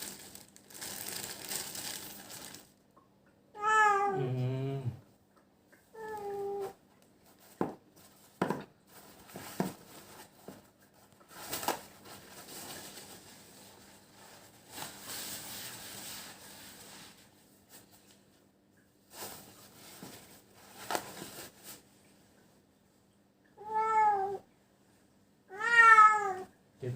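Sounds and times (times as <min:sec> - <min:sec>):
rustling and crinkling: 0:00.0 - 0:02.8, 0:06.0 - 0:22.5.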